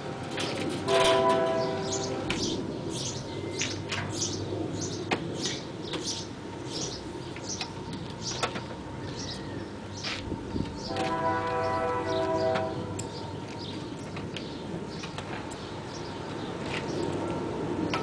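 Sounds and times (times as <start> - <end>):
birds chirping: 1.5 - 10.2, 10.8 - 17.2.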